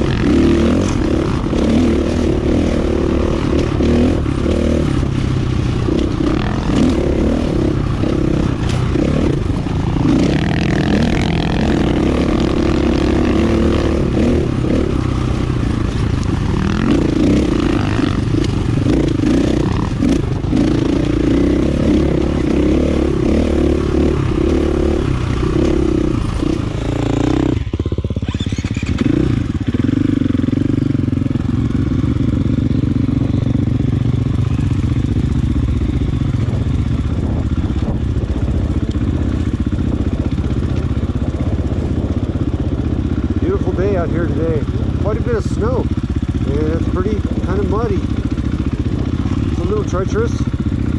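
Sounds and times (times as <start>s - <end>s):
dirt bike engine running: 0.0s - 50.9s.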